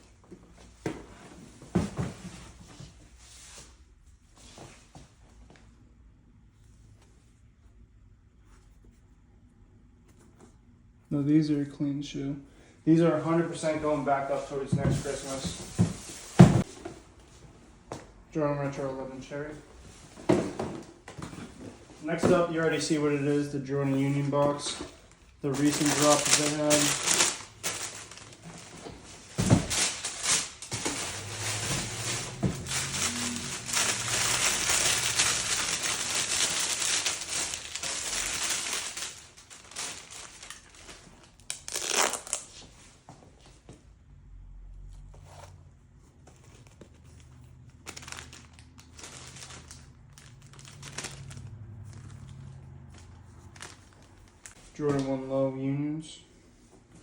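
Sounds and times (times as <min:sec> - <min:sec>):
packing paper crinkling: 0:24.5 - 0:42.6, 0:46.5 - 0:54.8.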